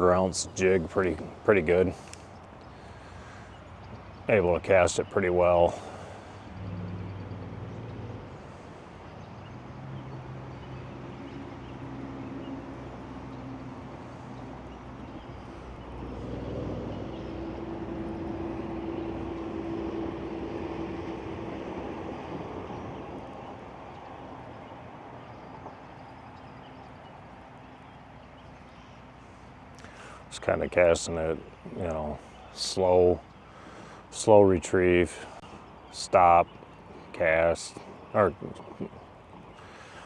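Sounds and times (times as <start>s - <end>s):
motor engine humming: 0.0s - 24.6s.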